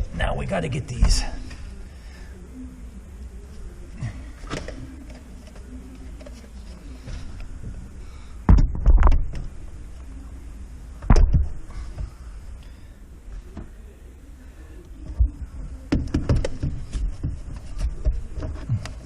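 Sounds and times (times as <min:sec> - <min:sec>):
loud thumps: 0:08.4 - 0:09.4, 0:11.0 - 0:11.7.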